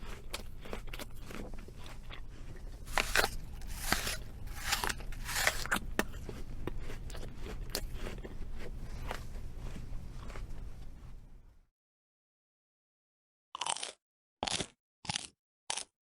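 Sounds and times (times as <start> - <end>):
crunchy food chewing: 0.0 - 11.3, 13.6 - 15.9
faint low hum: 0.0 - 11.6.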